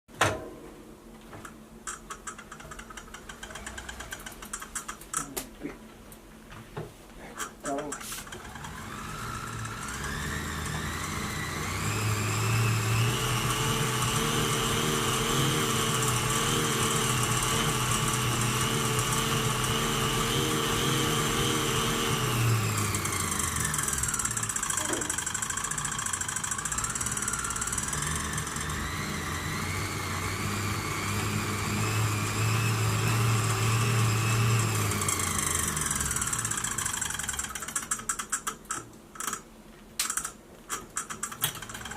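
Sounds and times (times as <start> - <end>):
bike trainer whine: 1.4 - 5.2, 8.2 - 39.4.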